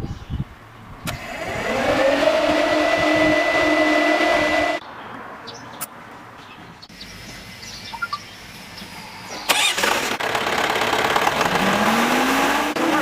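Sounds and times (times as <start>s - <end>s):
pump power unit running: 1.1s - 4.8s.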